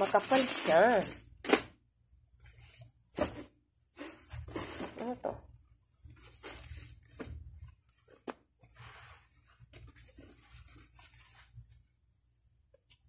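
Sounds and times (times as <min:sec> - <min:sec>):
packaging rustling and crinkling: 0:00.0 - 0:01.7.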